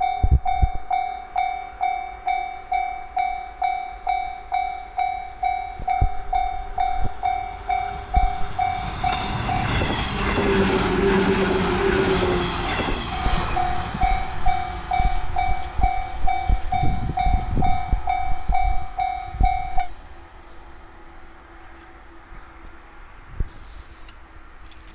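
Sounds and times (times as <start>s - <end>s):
train passing loudly: 0.0s - 23.2s
level-crossing bell clanging: 0.9s - 19.9s
wheels clicking over rail joints: 5.4s - 18.8s.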